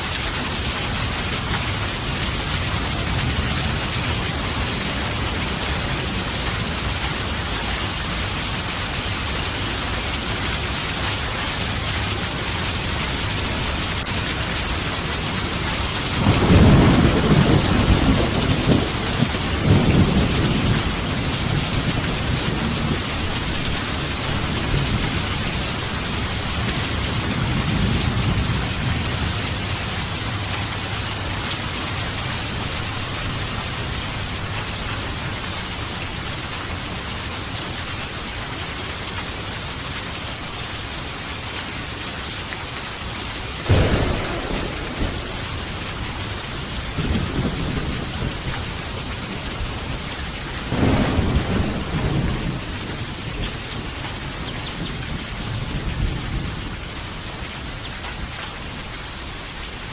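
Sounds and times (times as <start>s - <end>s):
heavy rain: 0.0s - 59.9s
thunder rumbling: 11.2s - 35.9s, 43.6s - 56.9s
sharp thunderclap: 15.8s - 25.4s, 43.6s - 48.7s, 50.6s - 53.3s.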